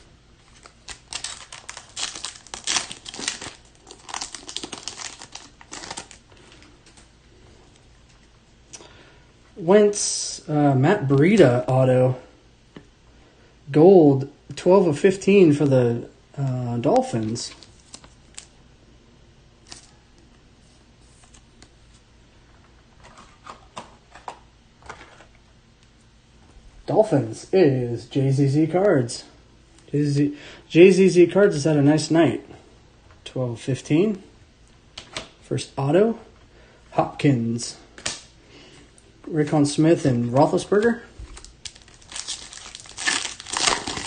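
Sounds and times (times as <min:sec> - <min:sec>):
card pack wrapper tearing and crinkling: 0:00.5 - 0:06.7, 0:19.6 - 0:20.0, 0:40.4 - 0:44.0.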